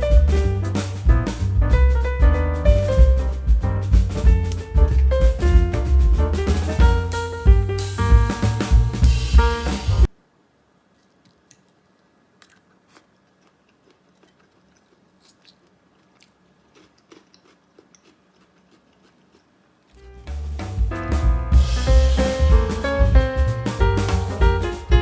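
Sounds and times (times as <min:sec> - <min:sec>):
background music with drum beat: 0:00.0 - 0:10.1, 0:20.2 - 0:25.0
chewing raw vegetables: 0:12.0 - 0:20.0.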